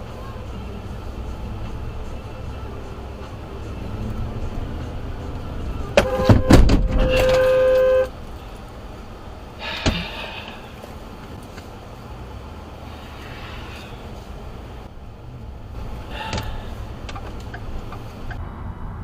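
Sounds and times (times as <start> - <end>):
road and engine rumble: 0.0 - 19.0
car horn: 5.8 - 8.2
knocks and thumps: 6.0 - 7.4.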